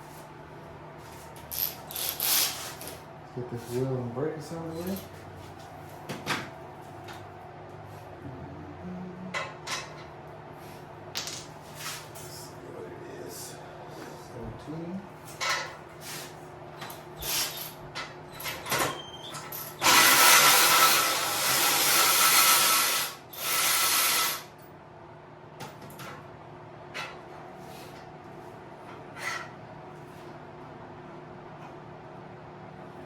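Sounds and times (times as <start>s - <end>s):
power tool spinning nut: 1.5s - 3.0s, 19.6s - 24.5s.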